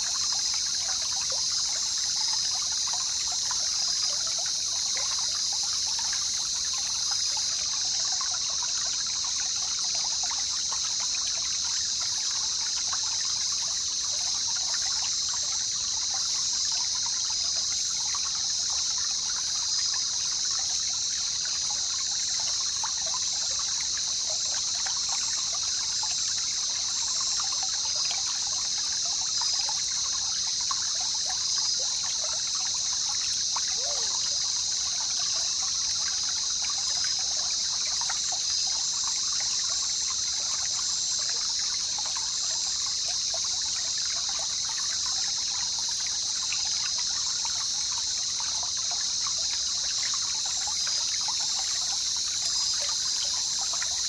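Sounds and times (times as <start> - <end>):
river water babbling: 0.0 - 54.0
high-pitched hiss: 31.1 - 43.5, 44.4 - 54.0.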